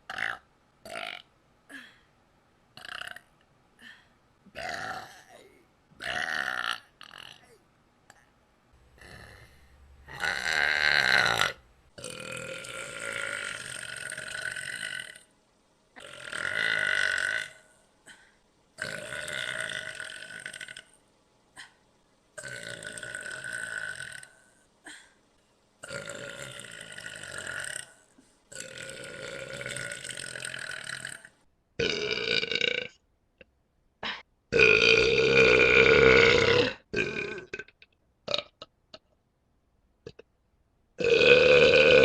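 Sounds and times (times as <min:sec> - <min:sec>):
person burping: 0:02.8 - 0:03.2, 0:04.5 - 0:07.6, 0:09.0 - 0:15.2, 0:16.0 - 0:18.2, 0:18.8 - 0:20.9, 0:22.4 - 0:25.1, 0:25.8 - 0:33.0, 0:34.0 - 0:39.1, 0:40.0 - 0:40.3, 0:41.0 - 0:42.0.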